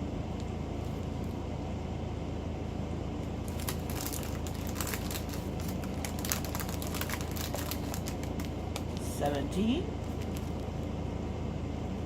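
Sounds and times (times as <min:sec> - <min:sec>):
steady low hum: 0:00.0 - 0:12.0
plastic bags crinkling: 0:03.4 - 0:09.2, 0:10.0 - 0:10.7.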